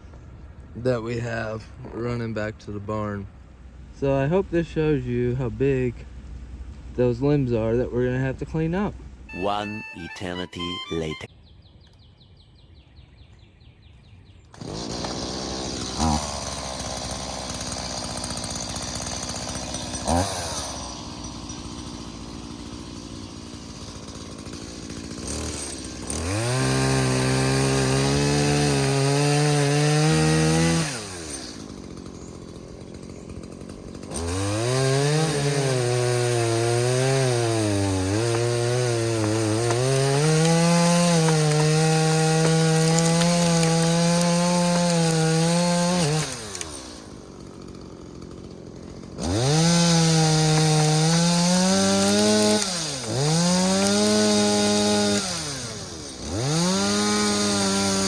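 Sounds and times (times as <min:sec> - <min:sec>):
chainsaw cutting wood: 0:14.5 - 0:58.0
chainsaw idling and revving: 0:14.5 - 0:58.0.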